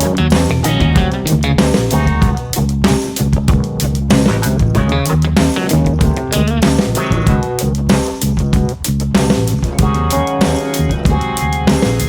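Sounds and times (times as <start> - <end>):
bass guitar: 0.0 - 12.0
drum beat: 0.0 - 12.0
electric guitar: 9.8 - 12.0.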